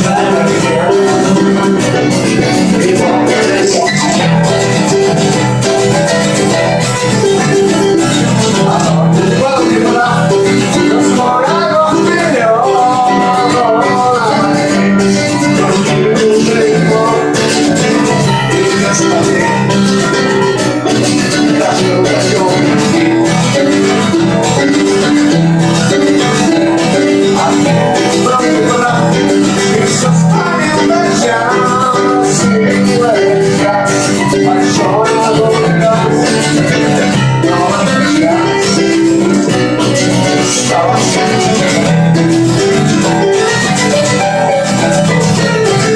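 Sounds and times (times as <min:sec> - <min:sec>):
guitar melody: 0:00.0 - 0:45.9
rhythmic guitar accompaniment: 0:00.0 - 0:45.9.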